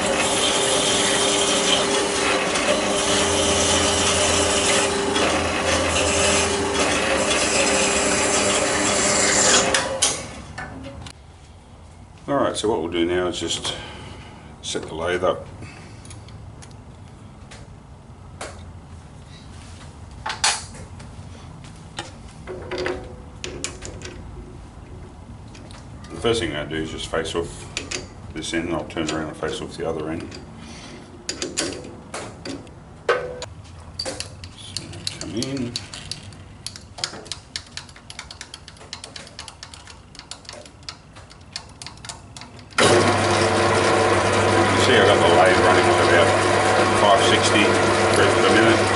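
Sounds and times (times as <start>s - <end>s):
lathe running with a hum: 0.0s - 10.4s, 42.8s - 48.9s
tools being handled and clamped: 20.2s - 21.0s, 22.0s - 24.3s, 25.4s - 26.2s, 27.6s - 28.2s, 28.8s - 30.5s, 31.3s - 42.8s
clicks and knocks of lathe setting: 34.0s - 43.3s.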